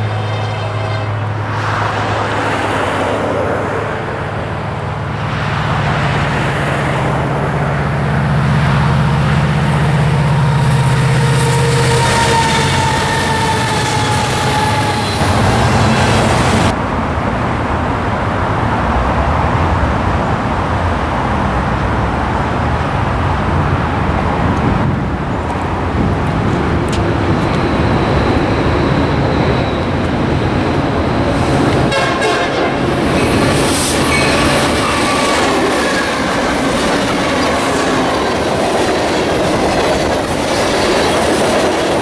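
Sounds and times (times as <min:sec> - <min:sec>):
train horn: 0:00.0 - 0:02.5, 0:08.7 - 0:16.7, 0:31.4 - 0:38.6
locomotive engines rumbling: 0:00.0 - 0:42.0.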